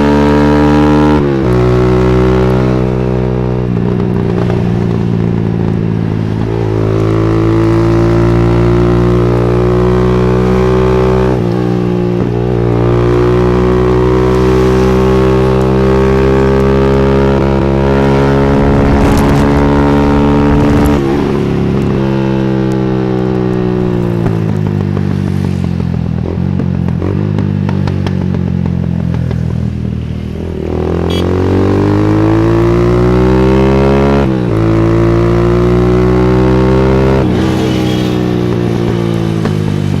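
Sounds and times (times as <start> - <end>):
scooter engine revving: 6.3 - 28.0
exhaust crackles: 12.2 - 25.0.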